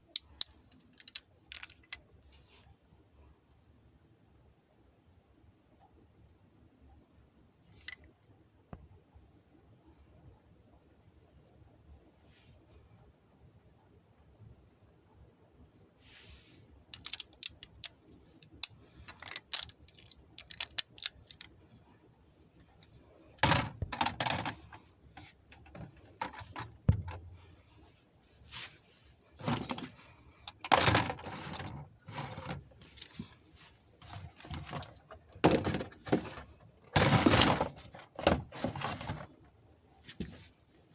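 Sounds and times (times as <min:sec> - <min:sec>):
plastic parts clicking and clattering: 0:00.1 - 0:02.1, 0:16.9 - 0:21.6, 0:22.6 - 0:27.3, 0:29.4 - 0:33.4, 0:34.0 - 0:39.4
rustling or scraping: 0:01.0 - 0:02.8, 0:16.0 - 0:17.7, 0:22.6 - 0:39.4, 0:40.0 - 0:40.9.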